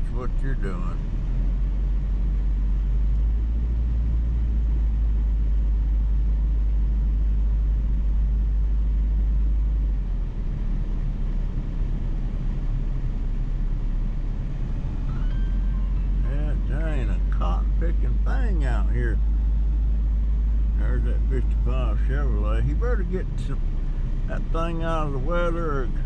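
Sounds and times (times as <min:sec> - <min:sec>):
engine and road rumble in cabin: 0:00.0 - 0:26.0.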